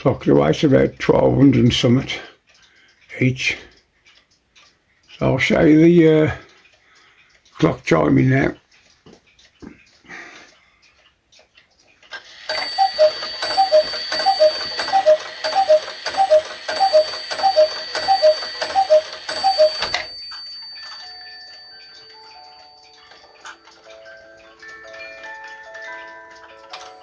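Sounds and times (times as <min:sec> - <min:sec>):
clock ticking: 0:00.0 - 0:27.0
cuckoo clock calling: 0:12.0 - 0:27.0
music box tune: 0:12.2 - 0:27.0.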